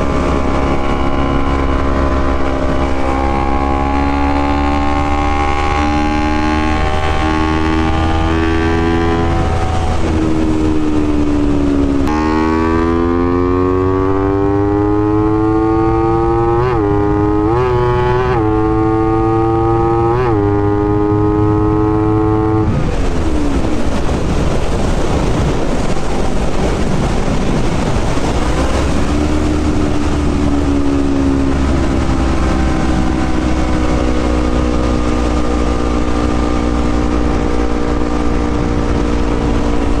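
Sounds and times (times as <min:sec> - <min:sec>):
motorcycle engine revving: 0:00.0 - 0:25.4, 0:27.4 - 0:40.0.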